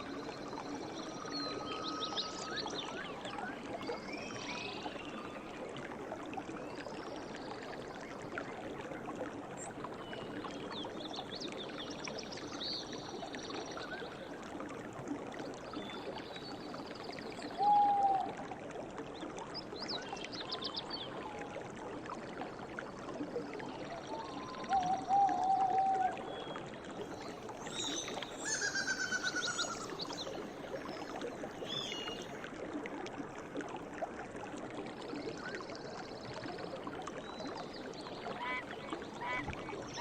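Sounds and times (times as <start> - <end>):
stream running: 0.0 - 40.0
low whistled call: 17.6 - 18.3.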